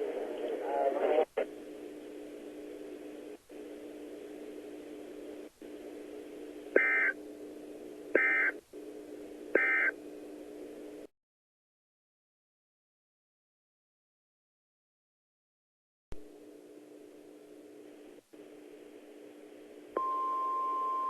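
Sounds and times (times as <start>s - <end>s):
steady low hum: 0.0s - 11.1s, 16.2s - 21.0s
emergency alert data tones: 6.8s - 7.2s, 9.6s - 10.0s.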